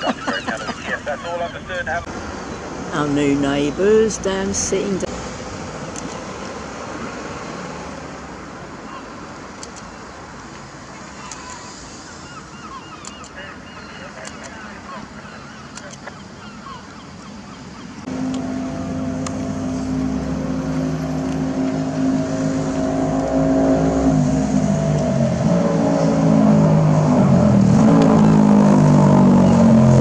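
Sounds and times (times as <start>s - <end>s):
large engine revving: 18.1s - 30.0s.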